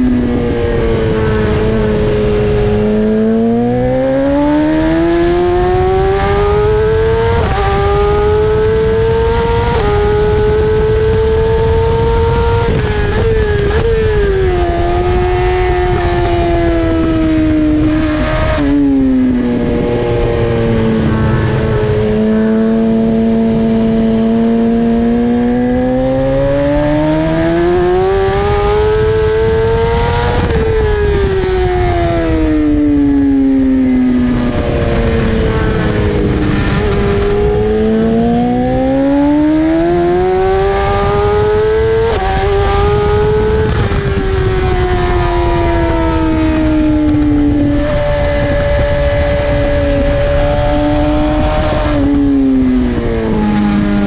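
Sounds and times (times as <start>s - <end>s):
motorcycle engine accelerating: 0.0s - 54.0s
wind rushing: 0.0s - 54.0s.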